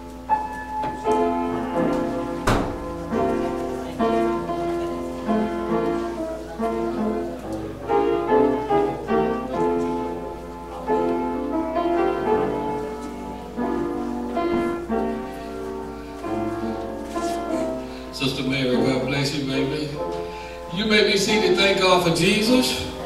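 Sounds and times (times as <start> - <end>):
keyboard playing slow chords: 0.0 - 23.0.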